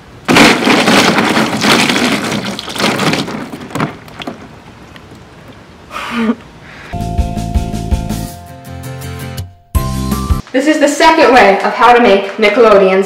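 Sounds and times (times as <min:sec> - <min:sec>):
slime splattering wetly: 0:00.3 - 0:04.3
music: 0:07.0 - 0:10.5.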